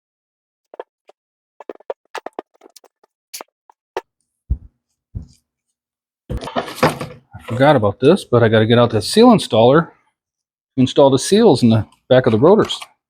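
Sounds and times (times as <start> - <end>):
dull thuds: 4.5 - 5.4.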